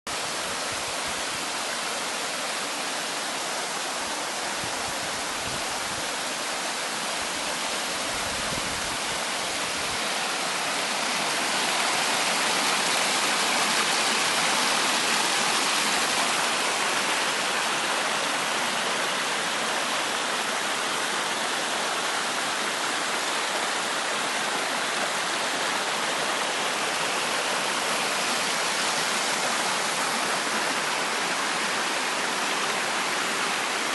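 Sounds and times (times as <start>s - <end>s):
stream water rushing: 0.1s - 33.9s.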